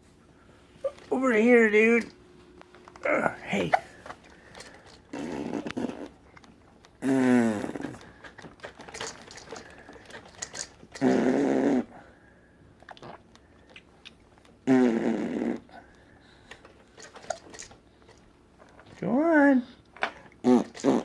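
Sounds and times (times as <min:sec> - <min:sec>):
mouth clicks: 0:02.9 - 0:11.9, 0:20.4 - 0:21.0
baby blowing raspberries: 0:03.1 - 0:06.4, 0:07.0 - 0:12.2, 0:14.6 - 0:18.2, 0:20.4 - 0:21.0.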